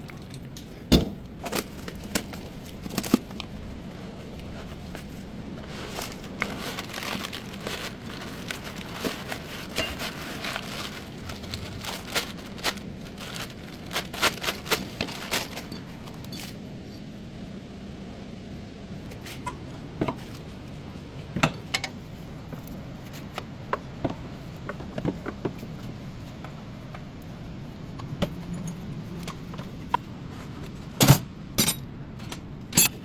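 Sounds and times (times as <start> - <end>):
steady low hum: 0.0 - 33.0
tools clicking and knocking: 31.0 - 33.0.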